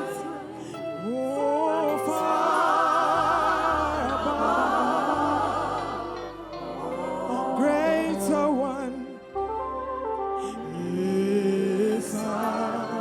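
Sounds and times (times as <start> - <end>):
voices singing held notes: 0.0 - 9.4, 10.5 - 13.0
sustained low bass notes: 3.1 - 11.5.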